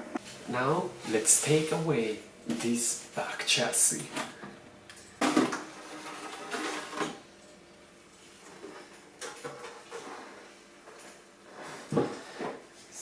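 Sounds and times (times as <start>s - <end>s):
plastic scraping rustle: 5.2s - 7.2s.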